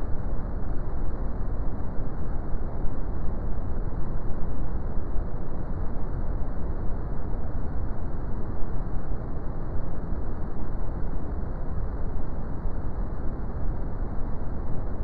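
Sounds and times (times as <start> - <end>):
brown noise rumbling hiss: 0.0 - 15.0.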